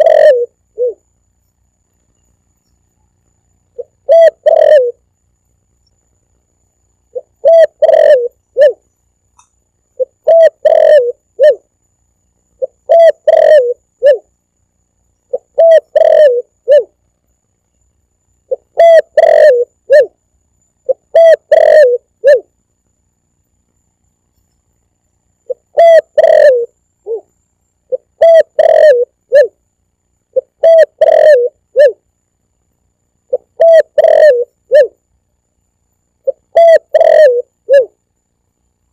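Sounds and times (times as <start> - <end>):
dove cooing: 0.0 - 1.1, 3.7 - 5.0, 7.1 - 8.8, 10.0 - 11.7, 12.6 - 14.3, 15.3 - 17.0, 18.5 - 20.2, 20.8 - 22.5, 25.4 - 27.3, 27.9 - 29.6, 30.3 - 32.0, 33.3 - 35.0, 36.2 - 38.0.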